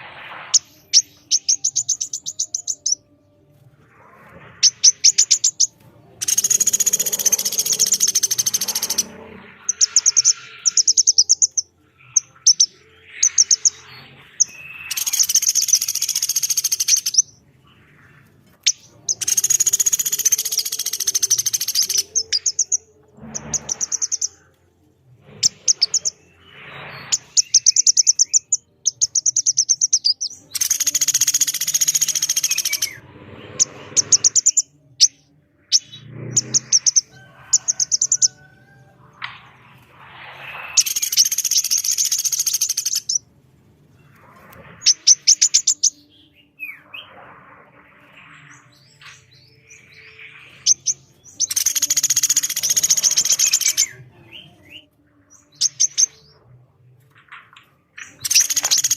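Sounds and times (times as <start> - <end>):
thin bird chirps: 0.0 - 4.0, 4.6 - 24.5, 25.4 - 38.6, 39.4 - 43.3, 44.0 - 56.5, 57.1 - 58.9
harsh rattling trills: 4.2 - 17.4
woodpecker rattling calls: 6.2 - 9.1, 19.1 - 22.7, 29.0 - 32.9, 51.4 - 53.8, 58.2 - 58.9.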